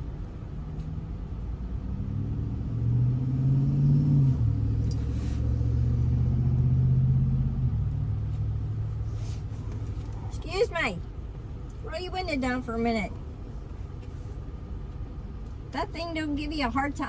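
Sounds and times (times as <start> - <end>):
car engine: 0.0 - 16.9
road rumble: 0.0 - 17.0.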